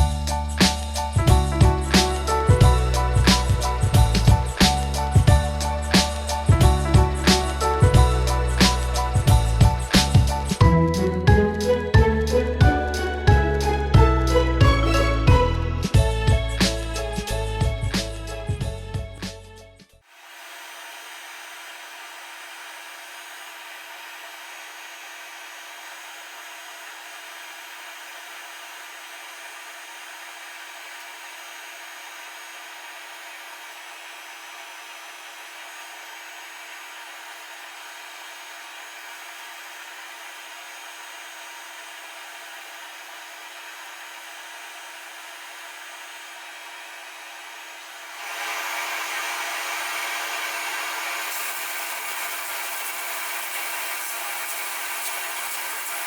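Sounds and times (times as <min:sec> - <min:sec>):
small power tool whirring: 0:20.1 - 0:56.0.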